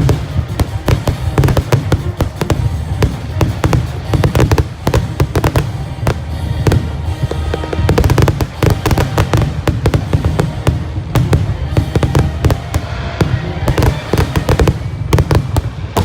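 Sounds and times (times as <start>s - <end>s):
fireworks bangs and crackles: 0.0s - 16.0s
music playing: 0.0s - 16.0s.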